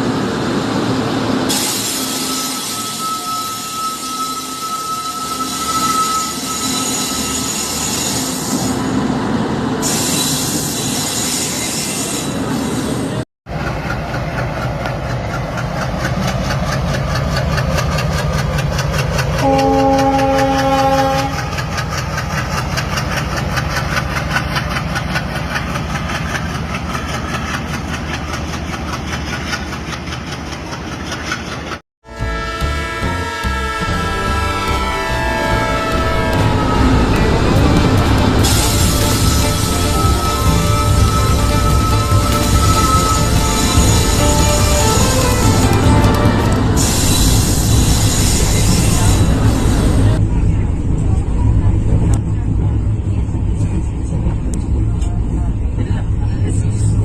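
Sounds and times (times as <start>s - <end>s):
train rumbling on track: 0.0s - 57.0s
high squeal of wheels: 1.5s - 8.9s, 9.8s - 13.1s, 34.8s - 50.0s
train horn: 19.4s - 21.7s, 32.0s - 49.5s.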